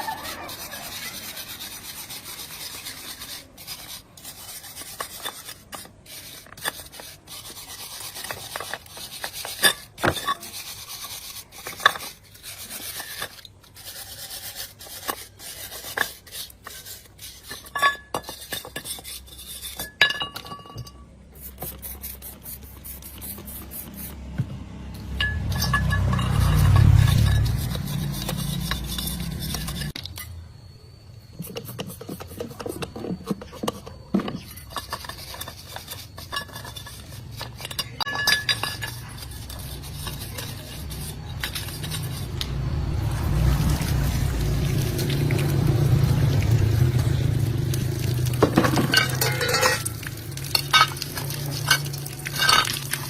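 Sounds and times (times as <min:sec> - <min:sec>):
scraping on metal: 0:00.0 - 0:24.3, 0:24.9 - 0:30.3, 0:31.2 - 0:53.0
metal clinks and knocks: 0:17.5 - 0:21.2, 0:24.9 - 0:30.4, 0:31.4 - 0:42.6, 0:46.8 - 0:53.0
low rumble: 0:41.6 - 0:48.2.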